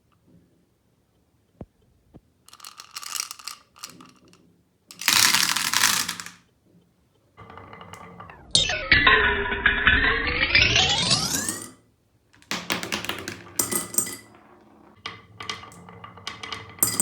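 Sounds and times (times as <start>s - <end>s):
marbles rattling down a track: 2.5s - 6.4s, 10.6s - 11.7s, 12.4s - 17.0s
ringing sound: 7.4s - 11.8s.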